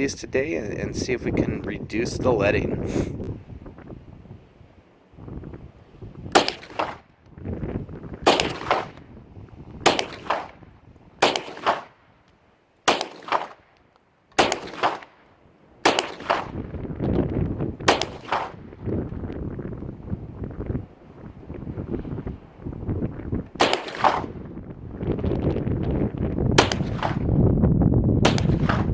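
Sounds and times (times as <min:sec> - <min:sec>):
rifle shots with echo: 0:06.3 - 0:07.1, 0:08.2 - 0:09.2, 0:09.8 - 0:12.1, 0:12.8 - 0:13.7, 0:14.4 - 0:16.8, 0:17.8 - 0:18.7, 0:23.6 - 0:24.5, 0:26.6 - 0:27.3, 0:28.2 - 0:28.9.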